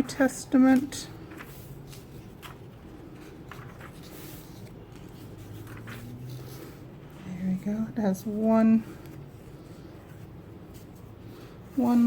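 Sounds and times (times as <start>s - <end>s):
thin paper pages rustling: 0.6s - 6.9s.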